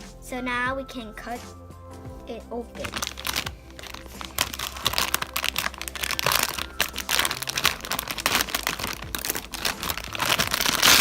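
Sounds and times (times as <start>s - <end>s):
plastic packaging crinkling: 2.8s - 11.0s
scissors cutting plastic: 2.9s - 11.0s.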